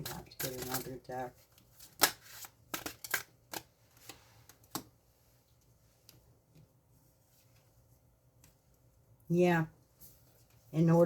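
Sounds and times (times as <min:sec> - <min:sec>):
cards clicking and tapping: 0:01.8 - 0:04.9.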